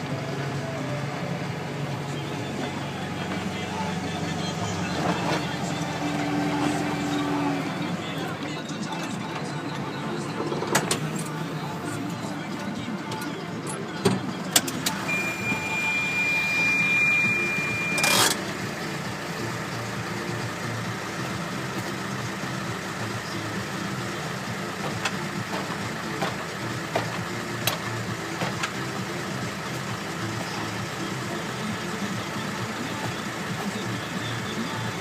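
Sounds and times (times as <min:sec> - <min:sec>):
tractor diesel engine running: 0:00.0 - 0:35.0
high steady beep: 0:15.0 - 0:18.3.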